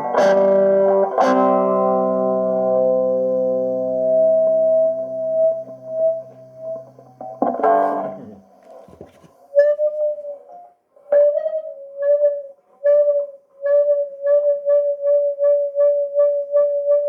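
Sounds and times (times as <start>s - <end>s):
guitar amplifier feedback howl: 0.0s - 8.6s.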